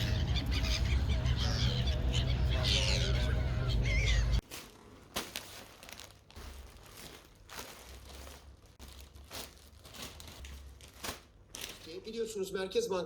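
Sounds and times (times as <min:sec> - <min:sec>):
crinkling and rustling: 0:04.4 - 0:12.4.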